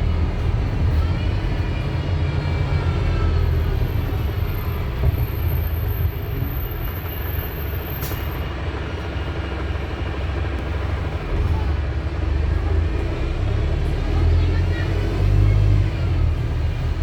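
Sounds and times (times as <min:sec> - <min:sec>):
bus engine rumble: 0:00.0 - 0:17.0.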